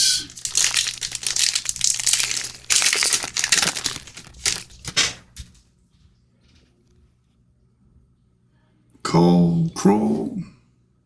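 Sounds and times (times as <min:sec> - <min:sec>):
card pack wrapper crinkling and tearing: 0:00.0 - 0:05.6.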